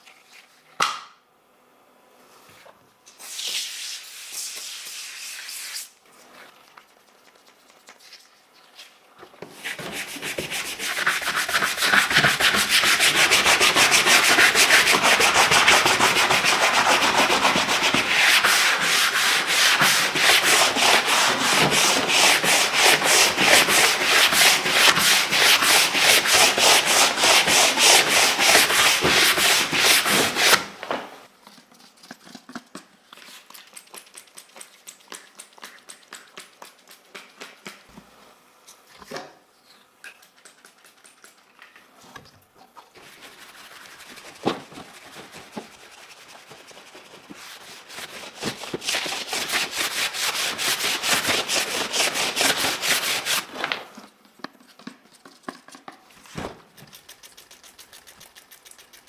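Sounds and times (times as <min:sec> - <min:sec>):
scrubbing plastic parts: 0:09.5 - 0:30.7, 0:54.6 - 0:59.0.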